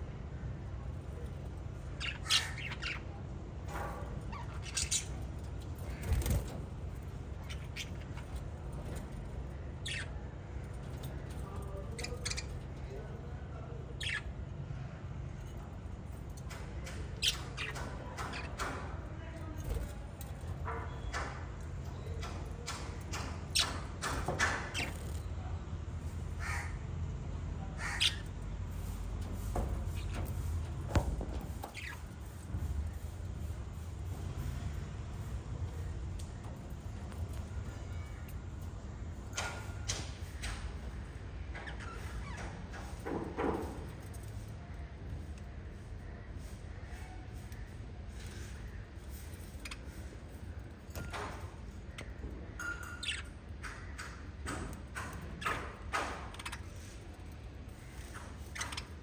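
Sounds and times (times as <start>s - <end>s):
lovebirds chirping and squawking: 1.1s - 25.3s, 26.0s - 26.9s, 27.7s - 44.5s, 45.1s - 59.0s
parrots squawking and chirping: 1.8s - 3.1s, 3.7s - 6.6s, 7.2s - 10.2s, 10.8s - 12.9s, 14.0s - 14.3s, 17.2s - 18.8s, 26.2s - 26.8s, 27.8s - 33.5s, 51.9s - 54.2s, 55.4s - 57.0s, 57.7s - 59.0s.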